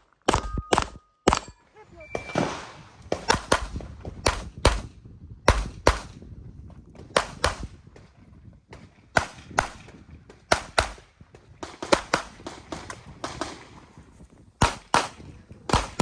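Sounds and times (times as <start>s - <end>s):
pistol shots: 0.2s - 1.6s, 2.2s - 4.9s, 5.5s - 6.2s, 7.0s - 7.8s, 8.7s - 13.9s, 14.6s - 16.0s.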